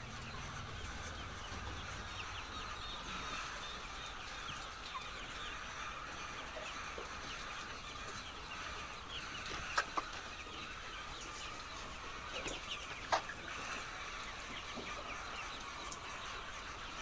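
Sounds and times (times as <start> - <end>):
hens clucking: 0.0 - 17.0.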